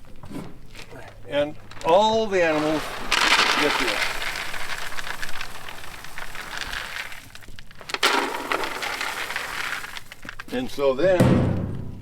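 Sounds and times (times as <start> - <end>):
feed pellets crackling and rustling: 0.0 - 11.2
sharp knock: 11.2 - 12.0.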